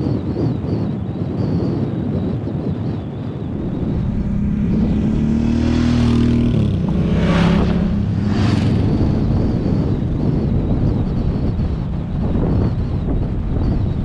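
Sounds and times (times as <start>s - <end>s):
wind rushing over microphone: 0.0s - 14.0s
motorcycle engine running: 3.2s - 14.0s
brief whooshes: 3.5s - 9.4s.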